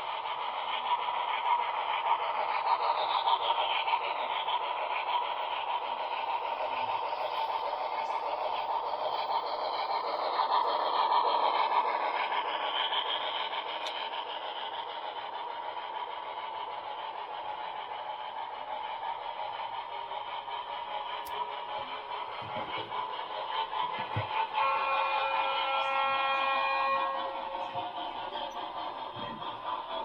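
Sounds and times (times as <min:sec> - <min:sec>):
model train mechanical hum: 0:00.0 - 0:30.0.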